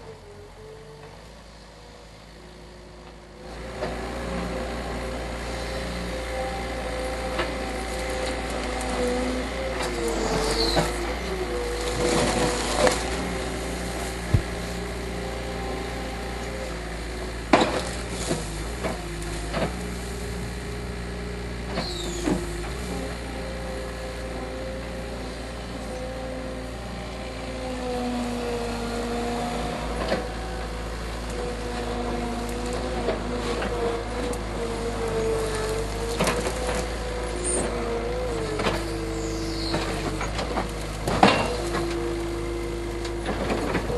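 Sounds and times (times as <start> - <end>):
skid steer engine running: 0.0 - 43.9
cracks and knocks of wood: 14.2 - 14.8, 35.4 - 37.0.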